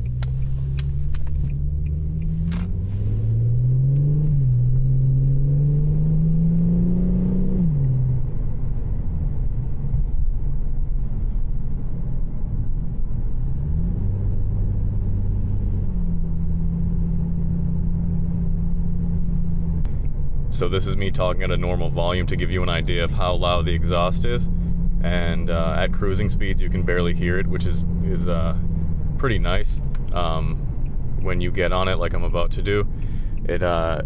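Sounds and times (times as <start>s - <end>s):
car engine and exhaust while driving: 0.0s - 34.0s.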